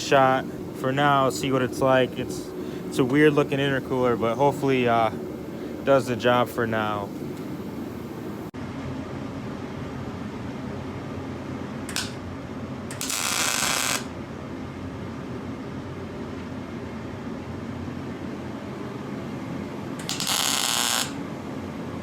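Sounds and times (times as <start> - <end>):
steady background hum: 0.0 - 22.0
crackling welding bursts: 11.9 - 12.2, 12.9 - 14.1, 20.0 - 21.2.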